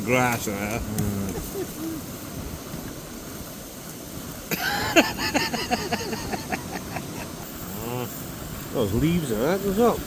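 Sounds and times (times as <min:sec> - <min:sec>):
man laughing: 0:01.1 - 0:02.0, 0:04.5 - 0:07.6.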